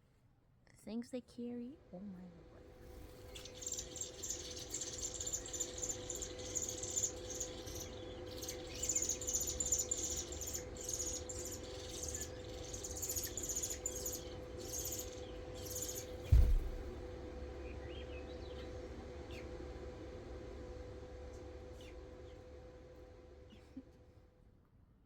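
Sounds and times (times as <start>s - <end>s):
faint steady hum: 0.0s - 25.0s
insects chirping: 2.8s - 17.0s.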